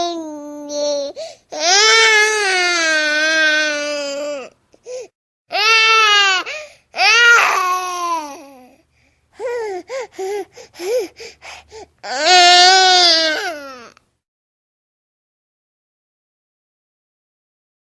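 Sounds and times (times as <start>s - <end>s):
infant crying: 0.0s - 8.8s, 9.4s - 14.0s.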